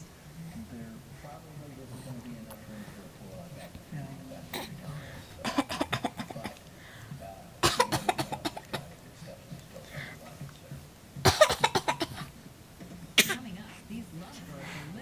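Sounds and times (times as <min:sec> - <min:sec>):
boy fake coughing: 0:05.5 - 0:06.5, 0:07.6 - 0:08.8, 0:11.3 - 0:12.3.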